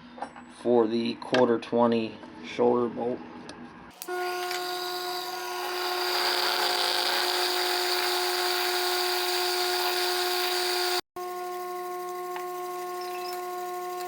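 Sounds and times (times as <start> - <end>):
machine tool motor whine: 3.9 - 14.0
drill bit cutting metal hiss: 4.0 - 11.0.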